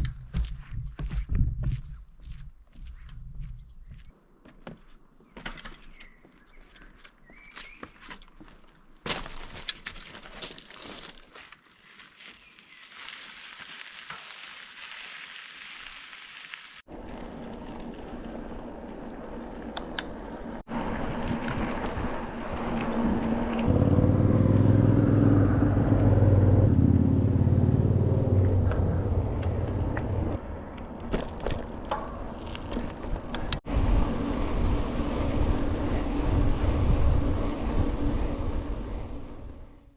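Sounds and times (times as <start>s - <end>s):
wind rumbling on microphone: 0.0s - 4.1s, 27.4s - 39.9s
bicycle tyre noise: 9.0s - 23.7s, 28.4s - 39.9s
passing motor vehicle drone: 20.7s - 30.6s, 33.7s - 39.9s.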